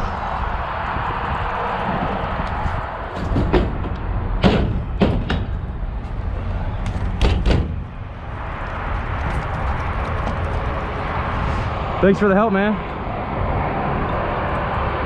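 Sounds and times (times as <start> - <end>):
steady low rumble: 0.0 - 15.0
sharp knocks and bangs: 3.1 - 6.2, 6.8 - 8.1.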